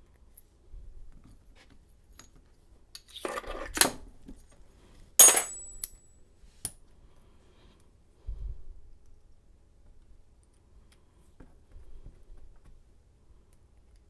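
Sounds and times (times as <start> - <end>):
metal lock parts clinking: 5.2 - 6.0.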